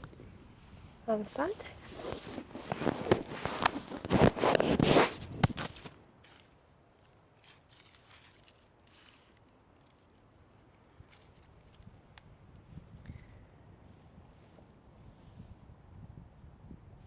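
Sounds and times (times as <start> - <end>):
clothing rustling on a surface: 1.6 - 6.5.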